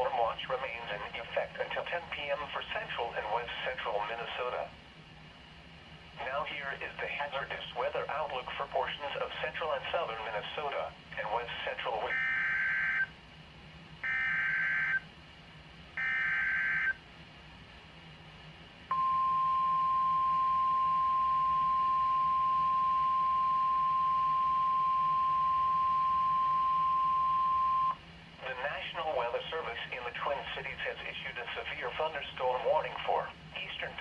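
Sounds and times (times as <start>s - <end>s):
steady warning alarm tone: 12.1s - 13.1s, 14.0s - 15.1s, 16.0s - 17.0s, 18.9s - 28.0s
data tone bursts: 18.9s - 28.0s.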